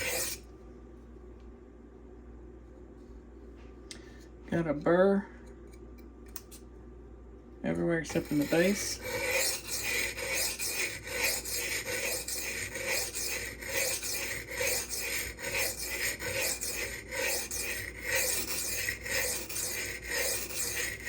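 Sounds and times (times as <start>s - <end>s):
knife scraping on whetstone: 0.0s - 0.4s, 8.1s - 21.0s.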